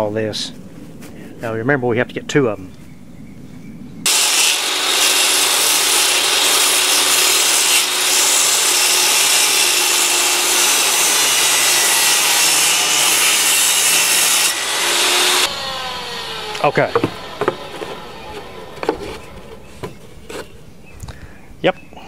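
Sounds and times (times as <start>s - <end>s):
table saw cutting wood: 4.1s - 20.5s.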